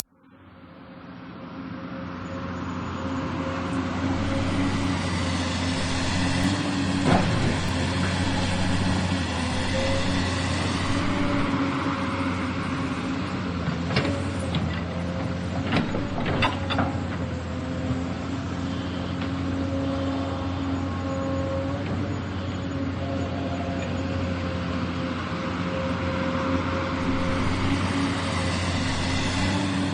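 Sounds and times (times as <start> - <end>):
excavator diesel engine running: 2.4 - 29.9.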